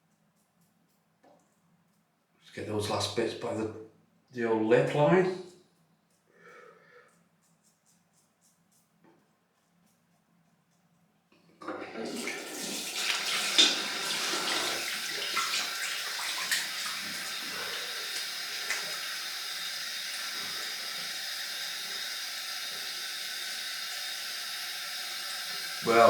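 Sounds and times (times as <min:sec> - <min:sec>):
water running from a tap: 0:11.6 - 0:26.0.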